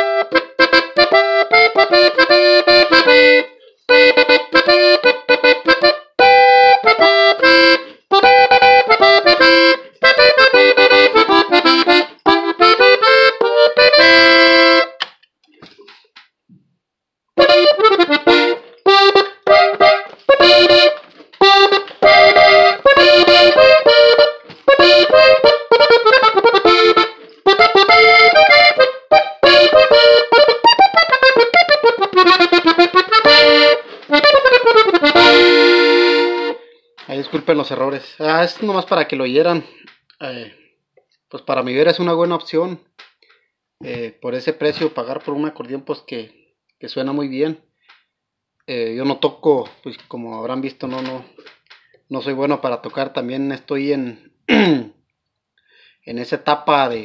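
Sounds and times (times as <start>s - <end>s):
button accordion solo: 0.0s - 15.1s, 17.4s - 36.8s.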